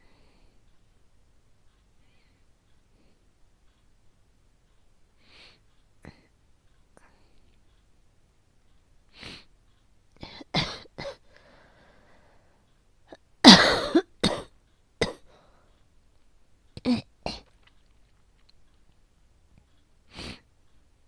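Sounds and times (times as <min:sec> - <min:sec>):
woman coughing: 0:10.4 - 0:11.3, 0:13.4 - 0:15.3.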